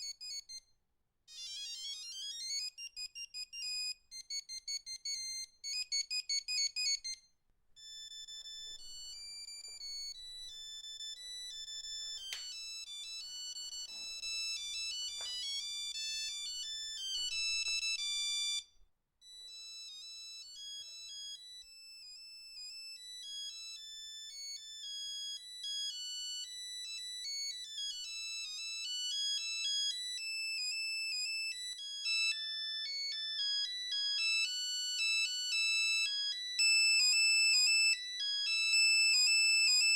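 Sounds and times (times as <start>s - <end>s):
monophonic phone ringtones: 1.3s - 7.2s, 7.8s - 18.6s.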